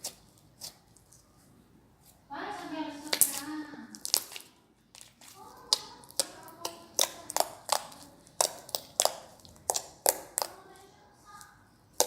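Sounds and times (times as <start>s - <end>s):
slime popping and clicking: 3.1s - 10.6s.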